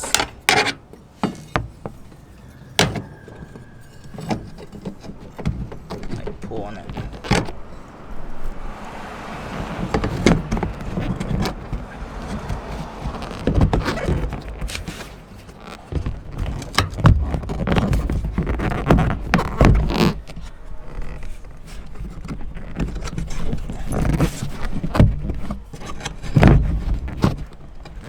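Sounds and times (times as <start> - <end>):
bracket scraping and knocking: 0.0 - 8.1.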